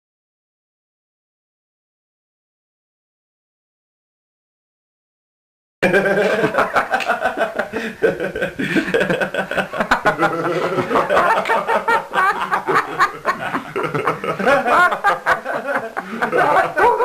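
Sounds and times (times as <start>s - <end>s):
people laughing: 5.8s - 17.0s.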